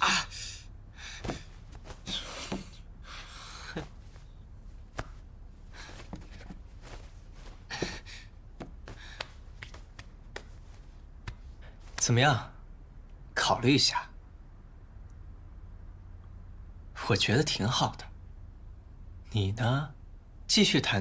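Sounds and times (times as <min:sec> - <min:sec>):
rustling: 0:01.1 - 0:12.2
soft taps and knocks: 0:03.8 - 0:12.1.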